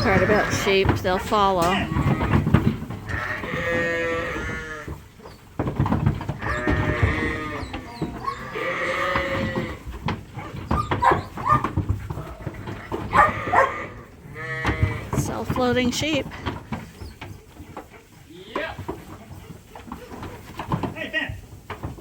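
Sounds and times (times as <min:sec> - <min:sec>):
sheep bleating: 0:03.1 - 0:04.9, 0:06.4 - 0:09.8, 0:13.1 - 0:15.1.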